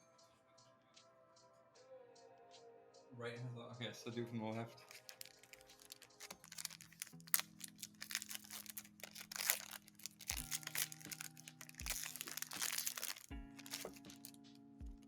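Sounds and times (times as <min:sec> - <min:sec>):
quiet background music: 0:00.0 - 0:15.0
foil wrapper crinkling and tearing: 0:04.7 - 0:14.5.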